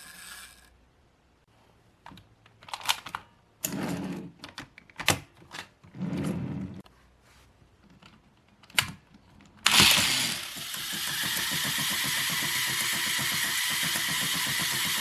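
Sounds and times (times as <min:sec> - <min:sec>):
toy motor with gear rattle: 0:00.0 - 0:00.8, 0:09.7 - 0:15.0.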